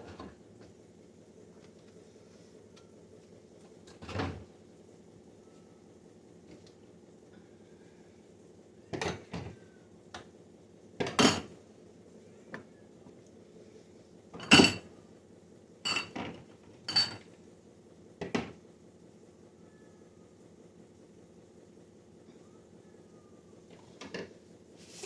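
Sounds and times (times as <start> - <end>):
faint steady hum: 19.0 - 25.0.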